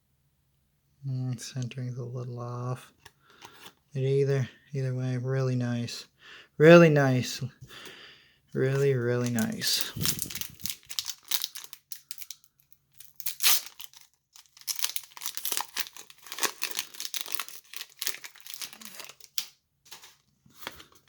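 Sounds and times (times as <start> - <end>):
foil wrapper crinkling and tearing: 8.6 - 21.0.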